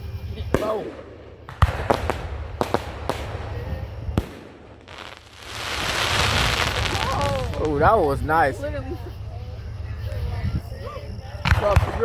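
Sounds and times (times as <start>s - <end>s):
fireworks bangs: 0.4s - 8.7s, 11.4s - 12.0s
fireworks hiss: 0.4s - 9.2s.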